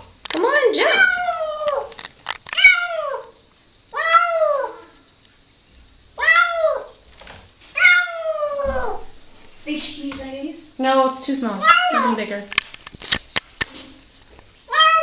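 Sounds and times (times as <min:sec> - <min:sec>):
kitten meowing: 0:00.8 - 0:01.9, 0:07.8 - 0:09.2, 0:11.6 - 0:12.2, 0:14.7 - 0:15.0.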